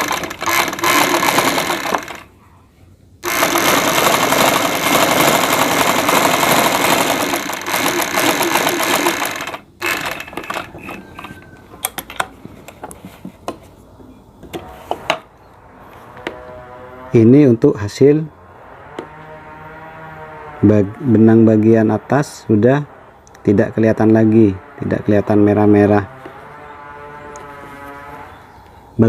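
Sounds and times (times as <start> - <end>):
sewing machine clicks: 0.0 - 2.2, 3.2 - 11.4
sewing machine stitching: 0.0 - 2.3, 3.2 - 11.4.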